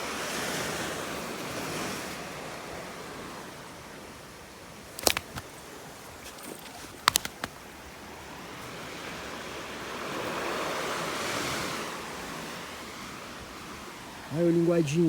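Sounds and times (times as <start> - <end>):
ocean surf washing on beach: 0.0 - 15.0
sharp clicks: 5.0 - 5.6, 6.4 - 7.6.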